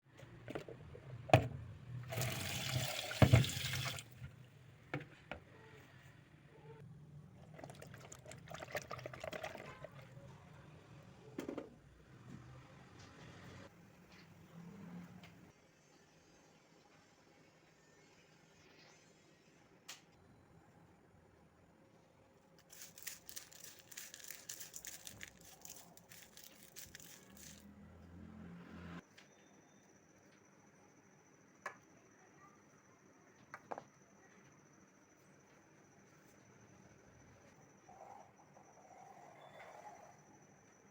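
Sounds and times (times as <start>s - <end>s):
water running: 2.0s - 4.3s.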